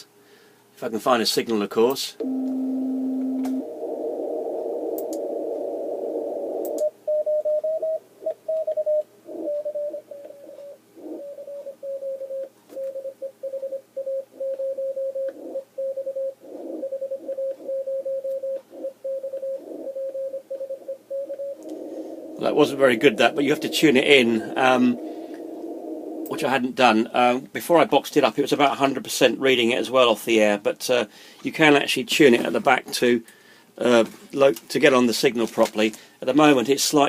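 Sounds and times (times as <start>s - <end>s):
morse code tone: 2.2s - 3.7s, 6.7s - 21.6s
radio static: 3.5s - 6.8s, 21.6s - 26.7s
faint radio noise: 21.6s - 27.4s.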